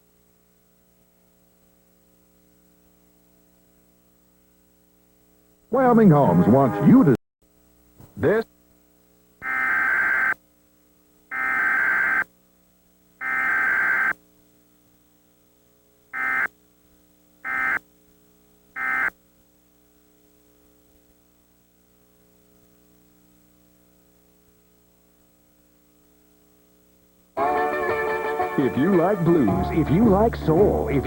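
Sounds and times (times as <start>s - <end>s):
faint hum: 0.0s - 31.0s
buzzing digital data tones: 9.4s - 10.4s, 11.3s - 12.3s, 13.2s - 14.2s, 16.2s - 16.5s, 17.4s - 17.8s, 18.8s - 19.2s.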